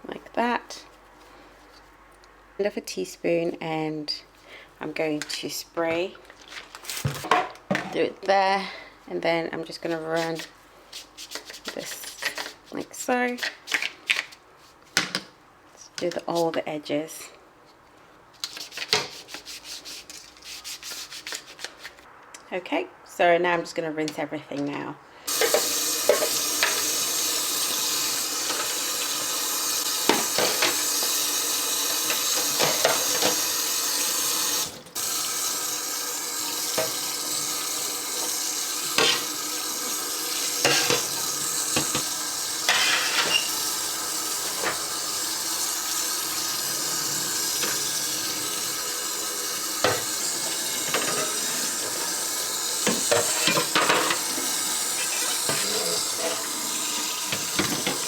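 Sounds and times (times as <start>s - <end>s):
tap running into sink: 25.3s - 33.6s, 36.4s - 43.7s, 49.4s - 58.0s.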